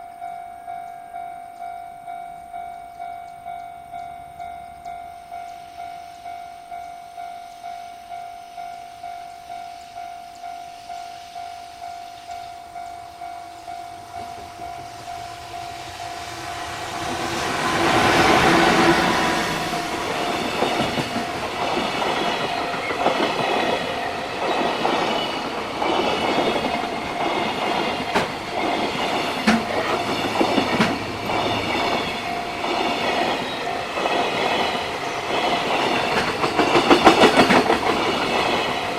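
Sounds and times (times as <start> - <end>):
level crossing alarm ringing: 0.0 - 37.4
train wheels clickety-clack: 15.7 - 38.9.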